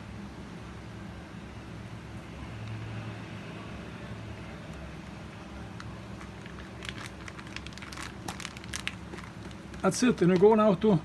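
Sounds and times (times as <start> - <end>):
low background hum: 0.0 - 11.0
plastic bag crinkling: 5.8 - 10.8.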